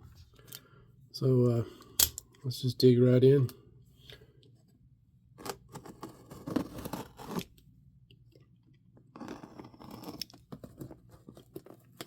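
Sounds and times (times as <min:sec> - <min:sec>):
cardboard box being opened: 0:05.7 - 0:07.5.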